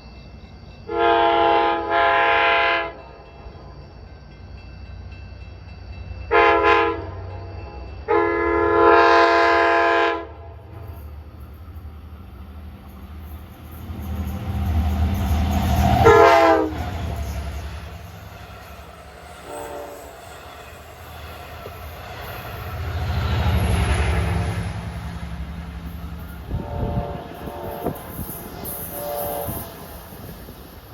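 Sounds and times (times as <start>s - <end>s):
train rumble: 0.0s - 30.9s
locomotive air horn blasts: 0.9s - 3.0s, 6.3s - 7.1s, 8.1s - 10.4s, 16.0s - 17.0s, 19.4s - 20.2s, 26.5s - 28.2s, 28.8s - 29.8s.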